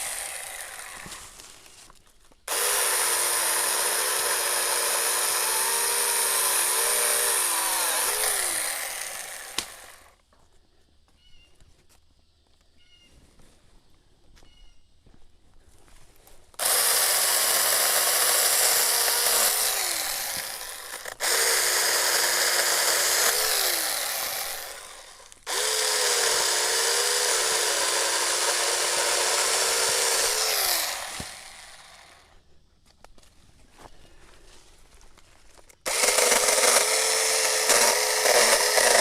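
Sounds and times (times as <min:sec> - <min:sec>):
electric chainsaw cutting branches: 0:00.0 - 0:01.8, 0:02.5 - 0:10.2, 0:16.6 - 0:32.3, 0:35.8 - 0:39.0.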